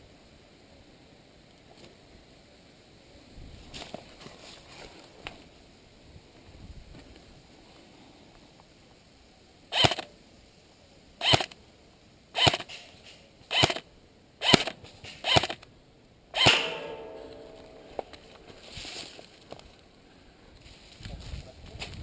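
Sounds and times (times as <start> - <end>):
airsoft rifle shots: 9.7 - 10.1, 11.2 - 11.6, 12.4 - 12.8, 14.4 - 15.6, 16.4 - 18.3.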